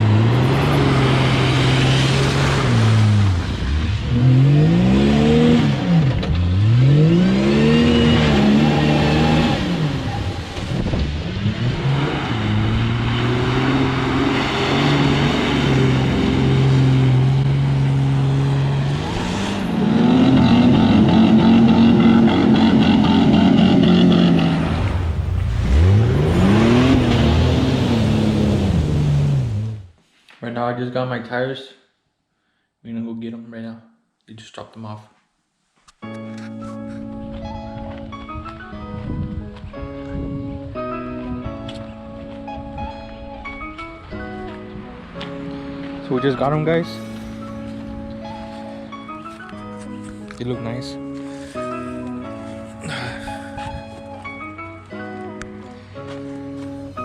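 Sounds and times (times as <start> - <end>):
car engine idling and revving: 0.0 - 30.0.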